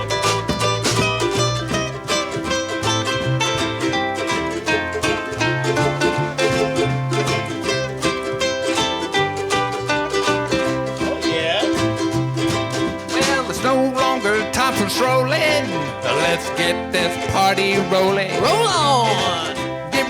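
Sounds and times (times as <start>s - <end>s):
ukulele band playing: 0.0s - 20.0s.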